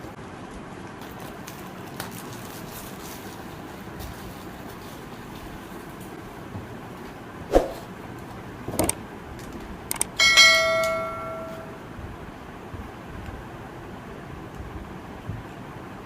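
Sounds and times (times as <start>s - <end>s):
sharp clicks and knocks: 8.7s - 11.6s
bell-like metallic ring: 10.2s - 11.8s.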